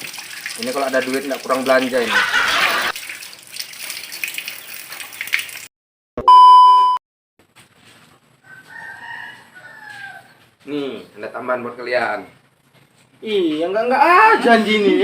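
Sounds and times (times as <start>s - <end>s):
water running and splashing: 0.0s - 5.7s
loud electronic beep: 6.2s - 7.0s.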